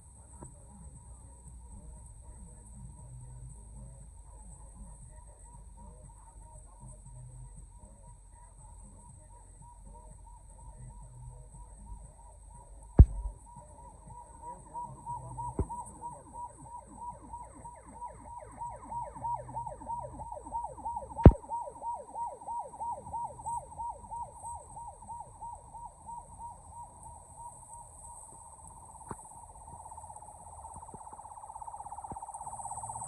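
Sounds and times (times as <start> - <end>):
sharp loud knock: 13.0 - 13.3
electronic siren yelping: 13.0 - 33.0.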